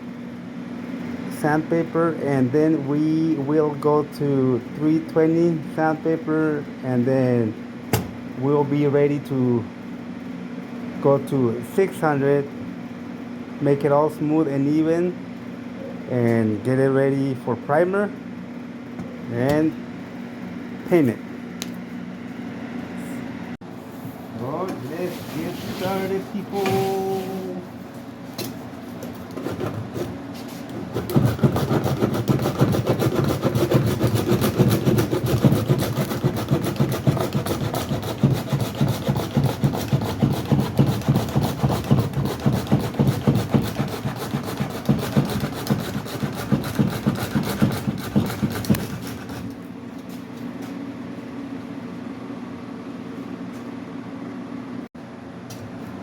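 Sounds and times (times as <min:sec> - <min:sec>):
power sander rubbing strokes: 0:30.9 - 0:49.6.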